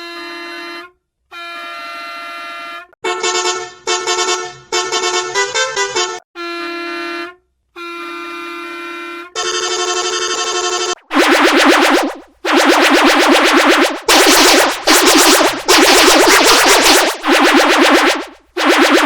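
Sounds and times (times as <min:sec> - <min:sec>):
bus horn blasts: 0:03.0 - 0:06.2, 0:09.4 - 0:11.0.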